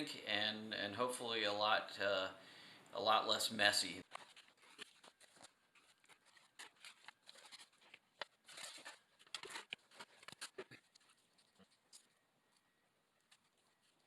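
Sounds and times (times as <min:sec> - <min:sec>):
plastic grout bag squeezed: 0:04.0 - 0:12.1.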